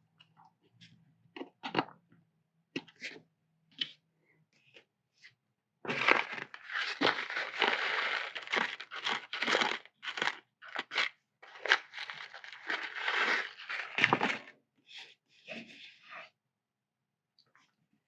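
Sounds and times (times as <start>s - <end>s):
plastic model parts scraping: 5.9s - 14.5s.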